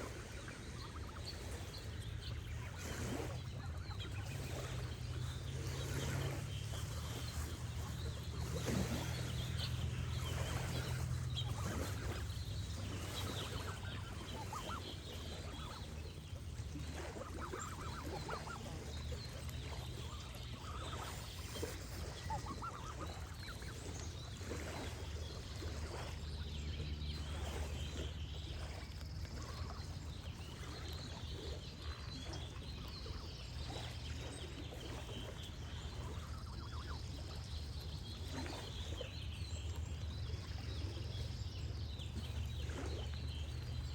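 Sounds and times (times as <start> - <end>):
gently flowing water: 0.0 - 43.9
small birds chirping: 0.0 - 43.9
geese honking: 9.0 - 16.1.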